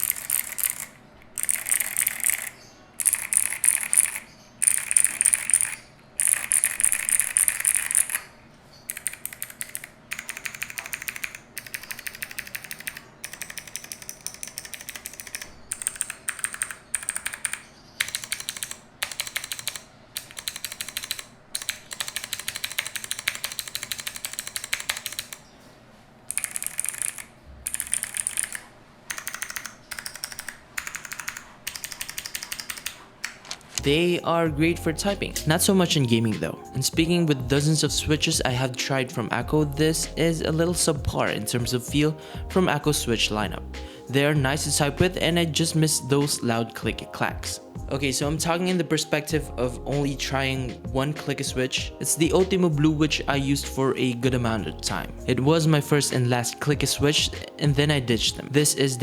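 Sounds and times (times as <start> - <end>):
clicky mechanical keyboard typing: 0.0 - 8.3, 8.9 - 25.5, 26.3 - 33.9.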